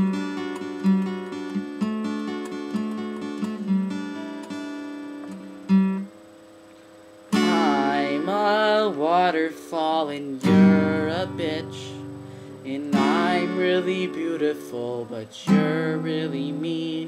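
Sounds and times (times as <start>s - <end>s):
acoustic guitar strumming: 0.0s - 17.0s
person singing: 7.4s - 17.0s.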